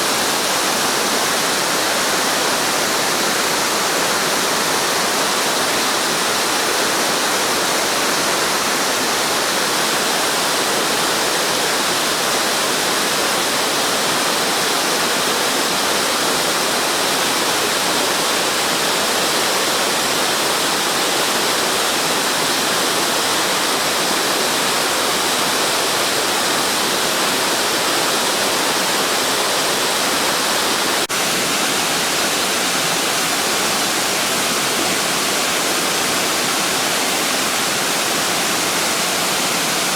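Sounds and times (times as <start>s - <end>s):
waterfall pouring: 23.1s - 39.9s.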